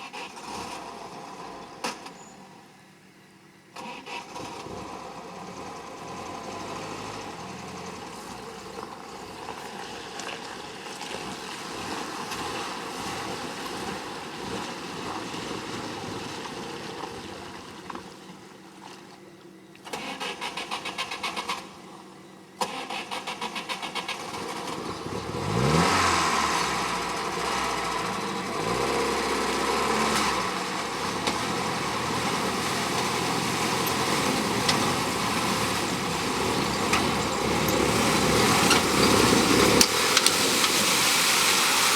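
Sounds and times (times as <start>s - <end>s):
engine starter cranking: 3.7s - 9.2s, 19.8s - 21.8s, 22.6s - 24.9s, 26.9s - 40.8s
engine revving and running: 3.8s - 18.0s, 22.6s - 41.9s.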